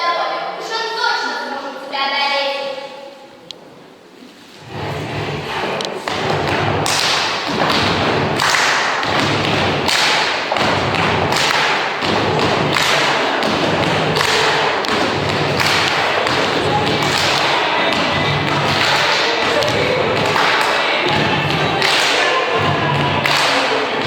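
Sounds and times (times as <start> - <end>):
heavy drum hits: 4.6 - 21.8.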